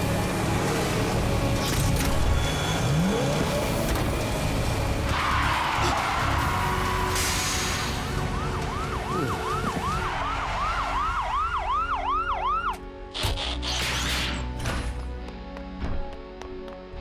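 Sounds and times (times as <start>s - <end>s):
police siren yelping: 8.1s - 12.8s.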